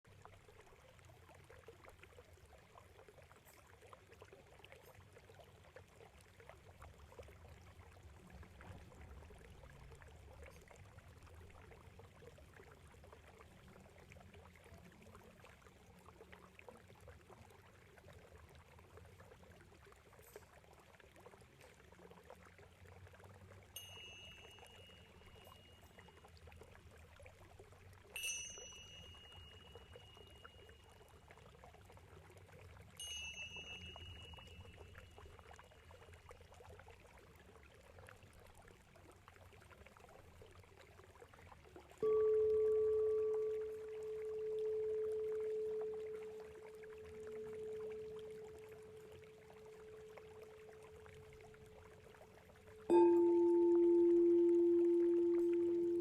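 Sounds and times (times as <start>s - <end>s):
faint trickling water: 0.0s - 56.0s
small bell ringing: 23.8s - 26.1s, 28.2s - 31.0s, 33.0s - 35.2s, 52.9s - 56.0s.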